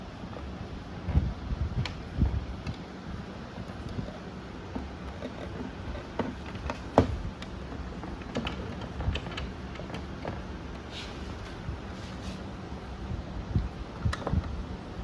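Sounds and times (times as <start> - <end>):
low steady hum: 0.0 - 15.0
plastic parts clicking and knocking: 4.7 - 10.8.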